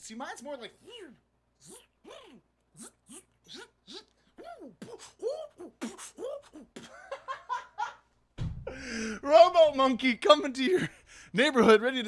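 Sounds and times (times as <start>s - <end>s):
beatboxed squeaky mouth chirps: 1.6s - 6.8s.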